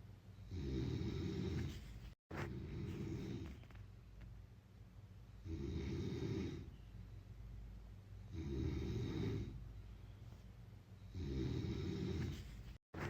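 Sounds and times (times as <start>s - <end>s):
person snoring: 0.5s - 3.6s, 5.4s - 6.7s, 8.3s - 9.6s, 11.1s - 12.6s.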